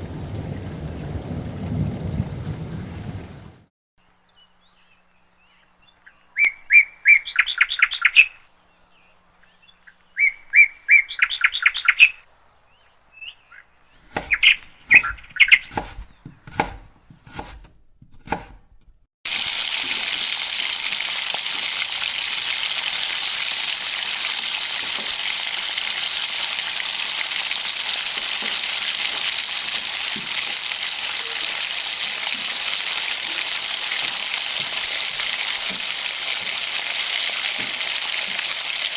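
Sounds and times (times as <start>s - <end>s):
food sizzling in hot oil: 19.3s - 38.9s.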